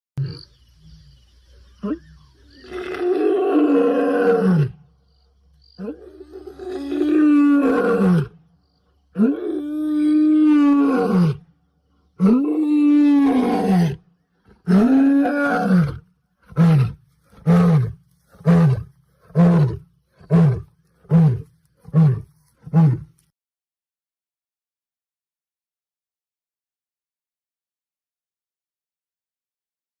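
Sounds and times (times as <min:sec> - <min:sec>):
big cat roaring: 0:01.8 - 0:04.8, 0:05.8 - 0:08.4, 0:09.1 - 0:11.5, 0:12.2 - 0:14.0, 0:14.6 - 0:23.1.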